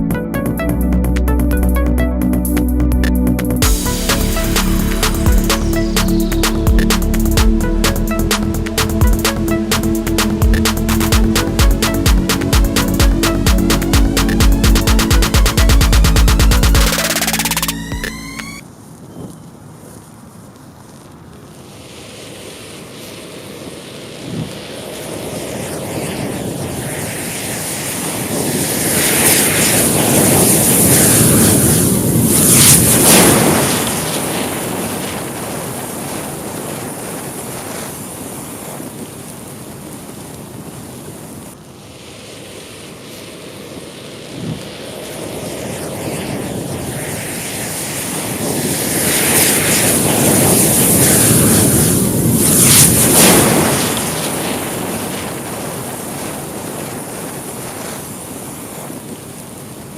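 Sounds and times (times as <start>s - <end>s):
crackling flare-ups: 0.0s - 59.9s
fire crackles: 18.6s - 25.1s
matches burning with rushing hiss: 18.8s - 25.9s, 29.0s - 45.9s.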